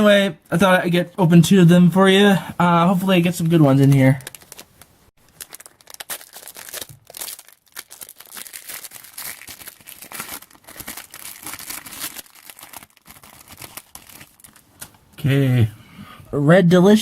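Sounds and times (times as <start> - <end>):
foil pack tearing and crinkling: 4.0 - 14.7.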